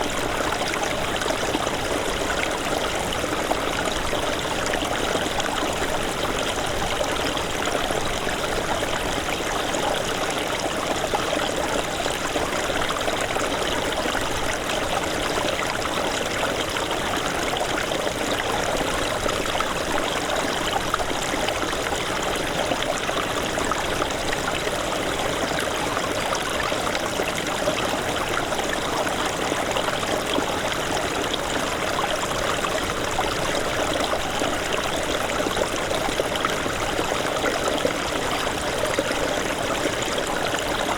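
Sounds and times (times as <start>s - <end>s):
stream babbling over rocks: 0.0s - 40.9s.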